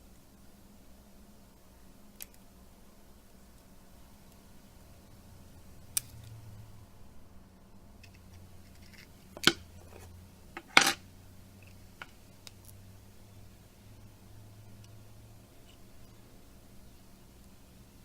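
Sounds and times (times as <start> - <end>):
faint low hum: 0.0 - 18.0
phone parts and tools clicking: 8.0 - 11.0.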